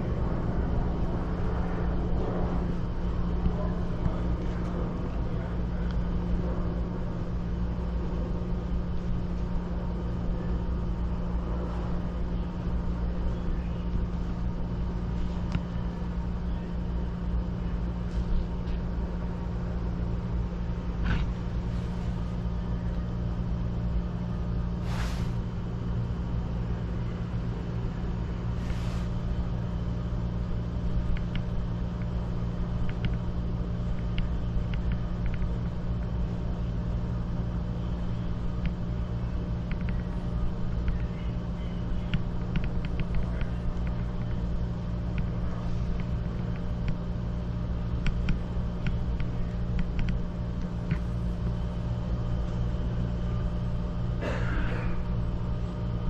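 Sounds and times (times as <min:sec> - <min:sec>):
constant hum: 0:00.0 - 0:56.0
low mechanical rumble: 0:00.0 - 0:56.0
short hisses: 0:24.8 - 0:25.4, 0:28.6 - 0:29.1.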